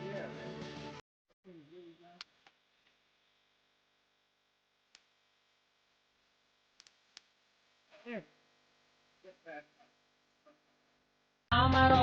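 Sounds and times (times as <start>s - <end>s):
faint clicks: 6.8s - 7.4s.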